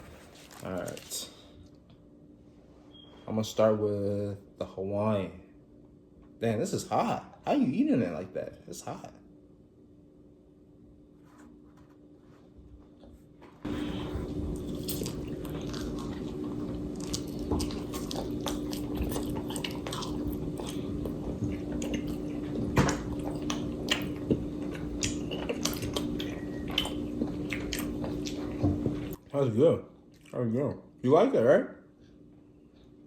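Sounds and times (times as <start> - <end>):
steady low hum: 0.0 - 33.0
wet chewing smacks: 14.6 - 29.2, 30.1 - 30.4.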